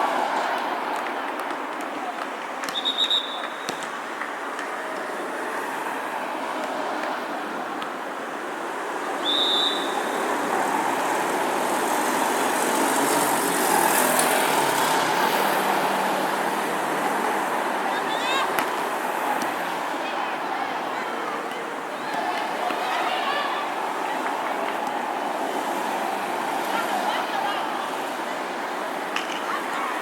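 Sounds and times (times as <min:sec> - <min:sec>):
traffic noise: 0:00.0 - 0:30.0
short high whistle blasts: 0:02.7 - 0:03.8, 0:09.2 - 0:10.2.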